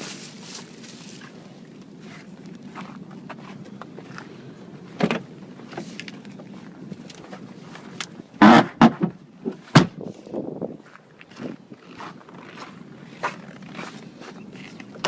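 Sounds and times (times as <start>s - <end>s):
car door creaking and clunking: 4.9s - 6.2s, 8.4s - 10.0s
car door bang: 8.4s - 10.0s.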